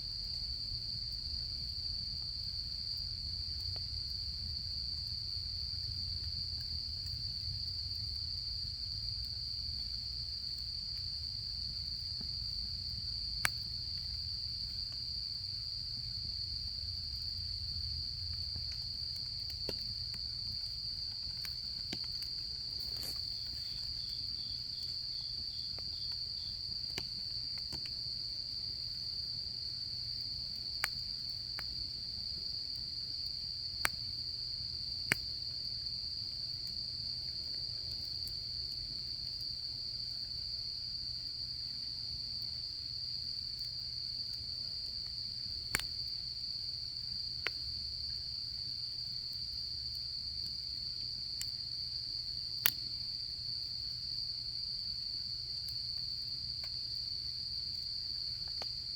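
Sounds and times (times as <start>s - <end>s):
campfire crackling: 0.0s - 53.8s
insects chirring: 0.0s - 58.9s
insect pulsed trill: 22.4s - 26.6s.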